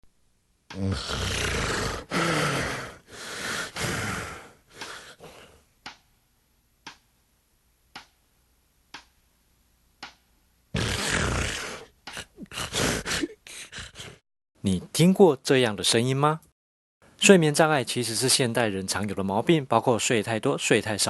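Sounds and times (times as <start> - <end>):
person snoring loudly: 0.7 - 5.5, 10.8 - 14.2.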